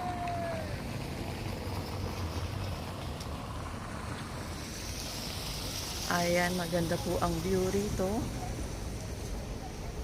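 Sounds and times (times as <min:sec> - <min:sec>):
even hiss: 0:03.8 - 0:10.0.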